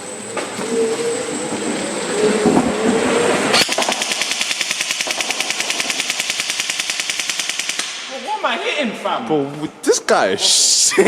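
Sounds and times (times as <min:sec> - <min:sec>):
steady noise: 0:01.1 - 0:11.0
bb gun automatic fire: 0:03.5 - 0:08.1.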